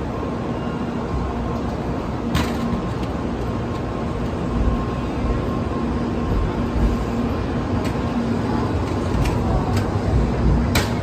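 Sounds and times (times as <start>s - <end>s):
faint constant hum: 0.0s - 11.0s
railway platform rumble: 0.0s - 11.0s.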